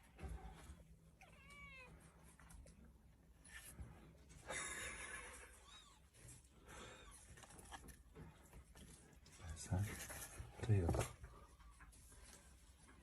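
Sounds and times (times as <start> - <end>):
cat meowing: 1.2 - 2.0.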